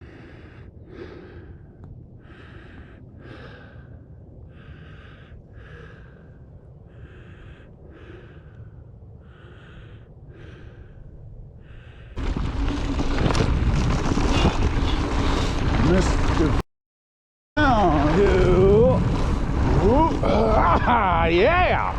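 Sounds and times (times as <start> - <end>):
person breathing heavily: 0.0 - 12.2
wind and riding noise: 0.0 - 16.6, 17.6 - 21.9.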